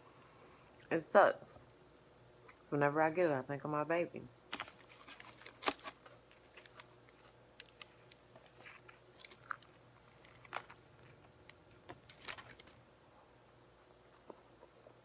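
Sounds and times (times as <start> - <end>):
chewing and biting sandwich: 4.6 - 12.9.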